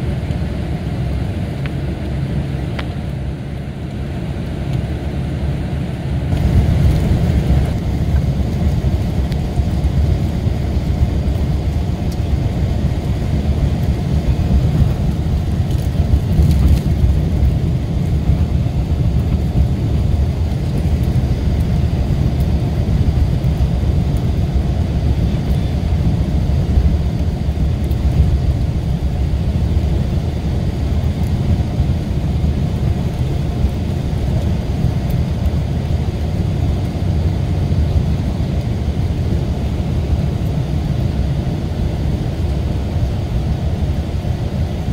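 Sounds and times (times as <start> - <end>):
diesel bus engine droning: 0.0 - 44.9.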